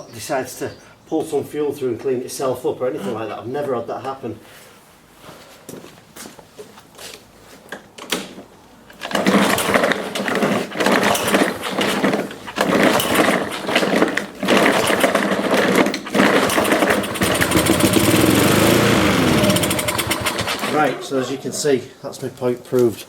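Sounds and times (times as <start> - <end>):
lawn mower pull-start: 8.9 - 21.6
mower engine running unevenly: 9.0 - 21.5.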